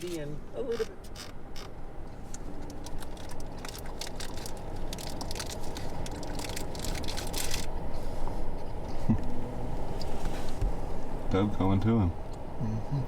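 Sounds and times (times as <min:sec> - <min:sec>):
crackling rustles: 0:00.0 - 0:09.1.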